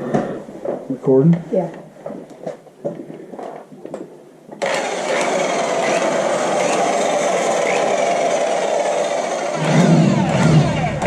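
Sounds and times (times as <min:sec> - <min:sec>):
rotary buffer whining: 0:04.6 - 0:11.0.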